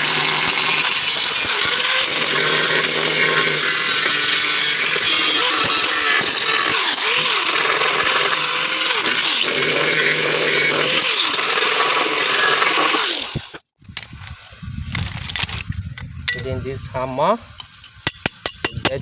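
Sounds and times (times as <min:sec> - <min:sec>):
power tool on sheet metal: 0:00.0 - 0:15.2.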